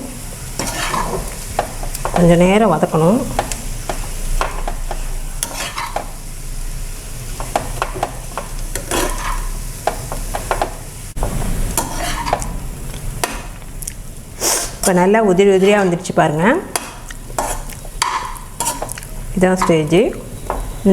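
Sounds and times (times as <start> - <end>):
oil sizzling: 0.0 - 20.9
spatula scraping paste in pan: 0.6 - 2.2, 3.4 - 6.1, 7.4 - 9.6, 11.8 - 12.5.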